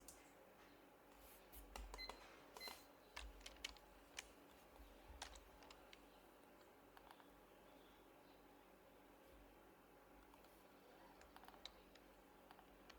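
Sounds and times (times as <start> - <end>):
keyboard and mouse clicks: 1.7 - 4.4, 5.1 - 6.0, 11.2 - 12.9.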